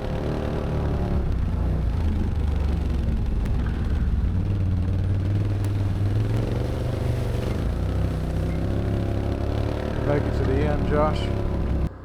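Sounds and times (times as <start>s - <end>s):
atv engine running: 0.0s - 12.0s.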